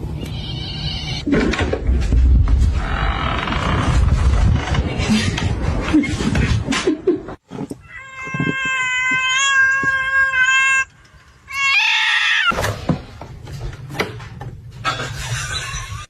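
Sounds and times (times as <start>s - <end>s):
cat meowing: 0.2s - 1.2s, 7.8s - 10.9s.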